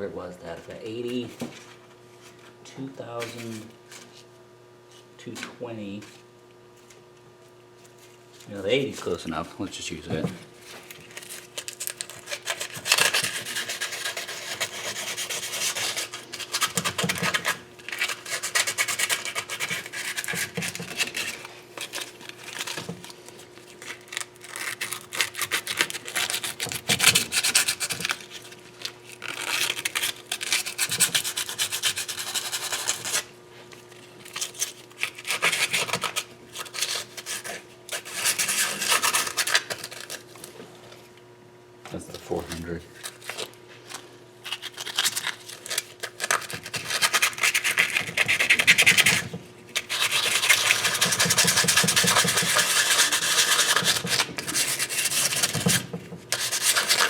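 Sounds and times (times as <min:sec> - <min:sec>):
sandpaper rubbing on metal: 0:12.4 - 0:21.3, 0:29.9 - 0:33.2, 0:49.9 - 0:55.8, 0:56.4 - 0:57.0.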